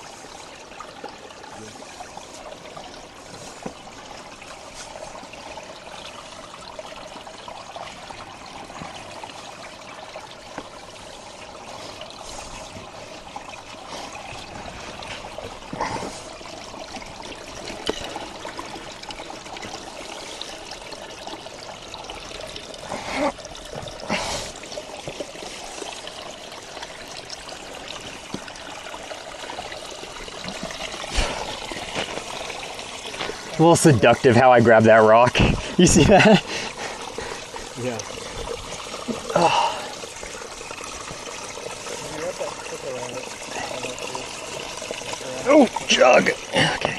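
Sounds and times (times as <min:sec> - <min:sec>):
running water trickling: 0:00.0 - 0:46.9.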